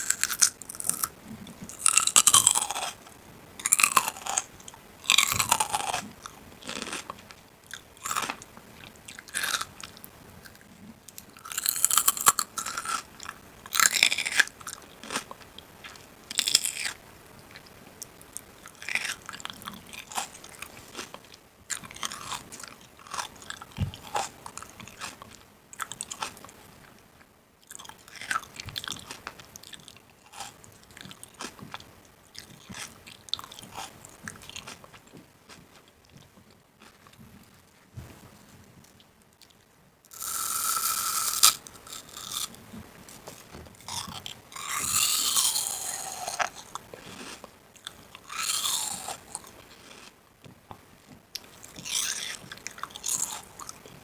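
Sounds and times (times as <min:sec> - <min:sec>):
crisp crunching: 0:01.7 - 0:03.0, 0:40.2 - 0:50.1.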